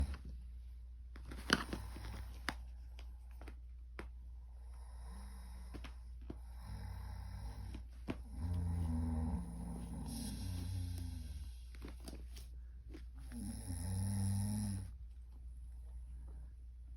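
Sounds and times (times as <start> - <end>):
loud snoring: 6.6 - 11.6, 13.4 - 14.9.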